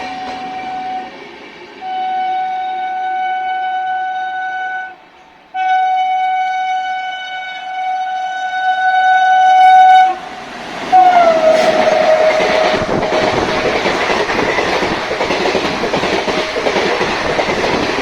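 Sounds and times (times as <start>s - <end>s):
train horn blasts: 0.0s - 1.2s, 1.8s - 14.0s
train coaches rushing and rattling: 0.0s - 3.0s, 10.0s - 18.0s.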